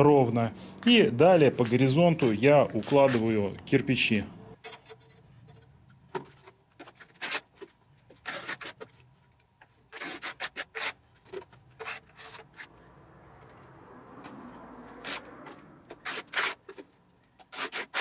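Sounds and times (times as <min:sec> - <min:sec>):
trowel scraping: 0:01.0 - 0:03.7, 0:04.6 - 0:09.1, 0:09.7 - 0:12.8, 0:14.3 - 0:18.0
bricks rubbing against mortar: 0:06.8 - 0:08.9, 0:09.8 - 0:12.7, 0:15.9 - 0:18.0.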